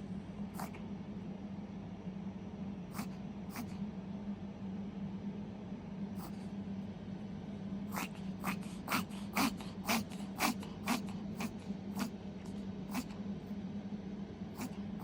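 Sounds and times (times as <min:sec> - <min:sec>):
puppy reverse sneezing: 0:02.9 - 0:03.7, 0:07.9 - 0:12.2.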